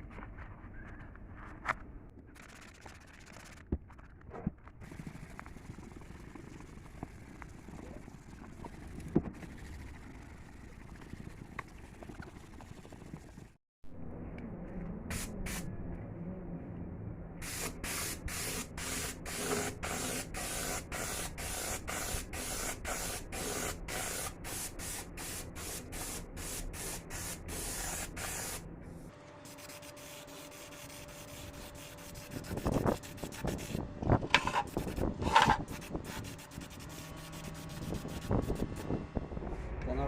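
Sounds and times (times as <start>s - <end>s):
scraping strokes: 29.5s - 38.7s
hand sanding plastic: 29.5s - 38.8s.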